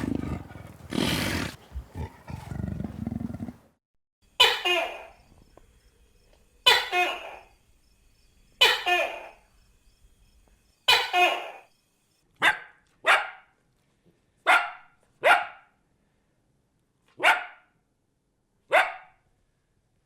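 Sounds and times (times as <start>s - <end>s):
dog barking: 12.4s - 13.5s, 14.4s - 15.7s, 17.2s - 17.7s, 18.7s - 19.2s.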